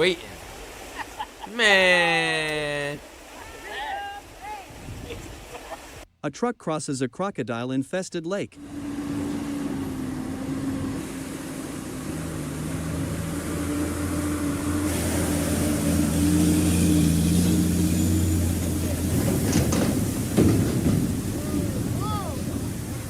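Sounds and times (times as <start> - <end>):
truck engine driving through water: 8.6 - 23.0.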